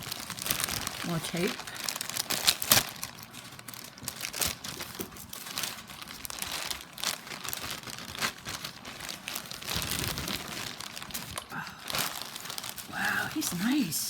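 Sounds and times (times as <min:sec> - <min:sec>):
packaging crinkling: 0:00.0 - 0:13.9.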